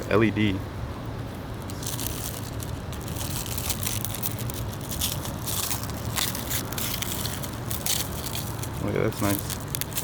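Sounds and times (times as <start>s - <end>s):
steady low hum: 0.0s - 10.0s
plastic packaging crinkling: 1.6s - 10.0s.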